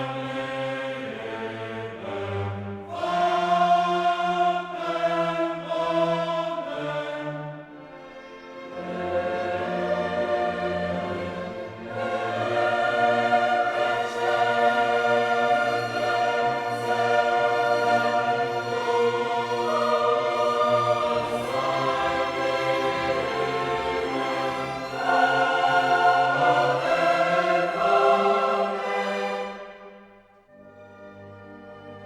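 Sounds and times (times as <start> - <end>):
choir singing held notes: 0.0 - 30.2
orchestra playing: 7.8 - 32.0.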